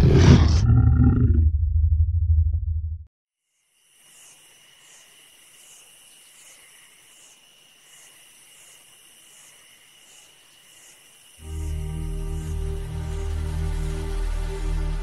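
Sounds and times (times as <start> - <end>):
insects chirping: 3.4 - 15.0
high hiss: 3.5 - 15.0
loud music: 11.4 - 15.0.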